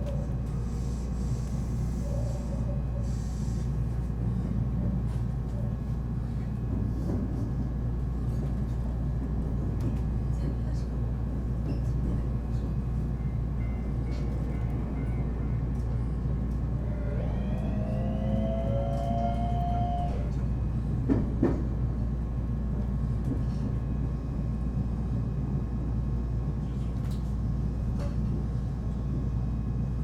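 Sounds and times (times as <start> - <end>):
train running rumble: 0.0 - 30.0
traction motor whine: 16.5 - 20.4.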